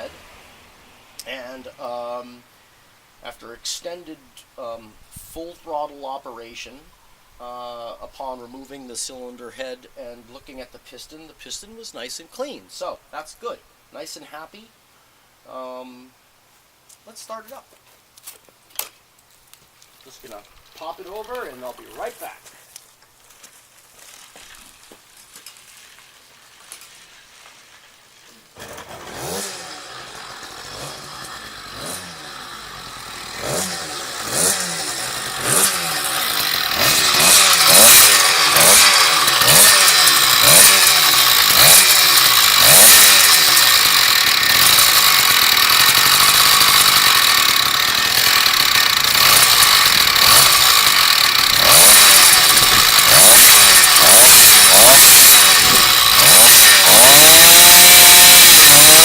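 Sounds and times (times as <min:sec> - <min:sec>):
two-stroke engine revving: 0:28.6 - 0:59.0.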